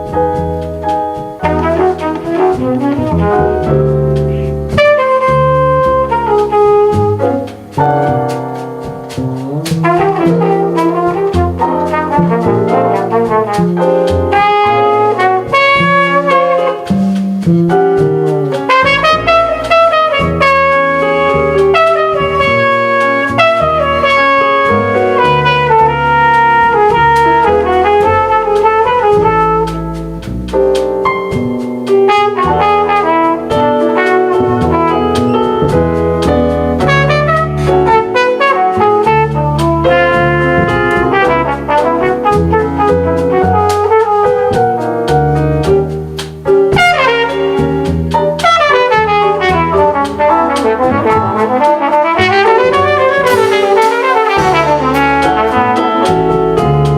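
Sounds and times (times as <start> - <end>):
cymbal and drum strokes: 0.0 - 56.9
jazz quartet playing: 0.0 - 56.9
brass horn melody: 1.4 - 7.6, 9.4 - 30.3, 31.9 - 45.8, 46.7 - 56.9.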